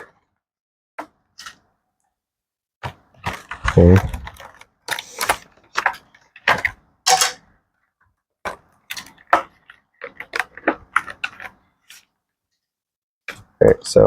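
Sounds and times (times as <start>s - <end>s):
toy packaging rustling and clicking: 3.2s - 7.4s, 8.5s - 12.2s.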